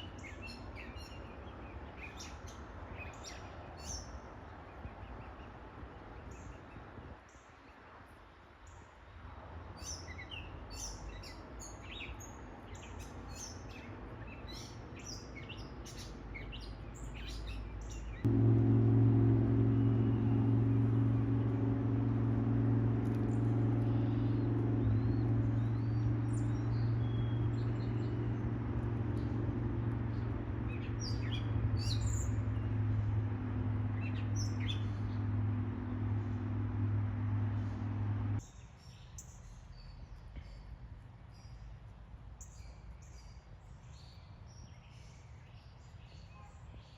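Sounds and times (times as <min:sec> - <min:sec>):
birds chirping: 0:12.8 - 0:38.4
low mechanical hum: 0:17.1 - 0:38.4.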